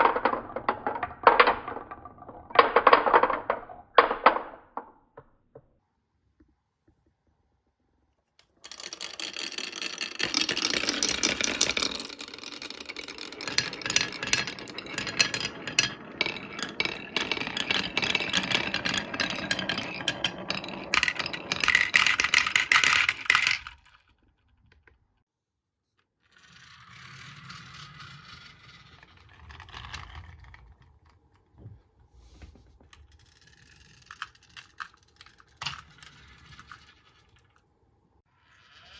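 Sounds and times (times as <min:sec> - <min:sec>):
marbles rattling down marble run: 0:00.0 - 0:04.6, 0:08.6 - 0:23.8, 0:33.1 - 0:37.4.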